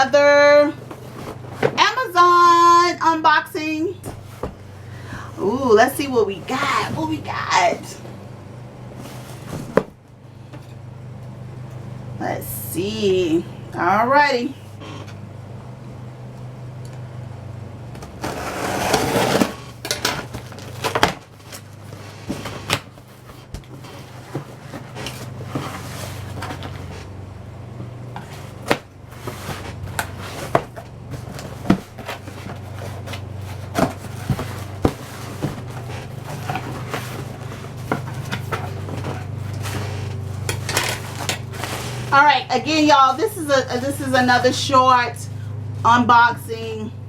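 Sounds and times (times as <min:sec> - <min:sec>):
cardboard and packing rustles: 0:00.0 - 0:11.8, 0:17.9 - 0:46.0
steady low hum: 0:00.0 - 0:47.0
cardboard tearing: 0:18.2 - 0:27.2, 0:28.2 - 0:42.2.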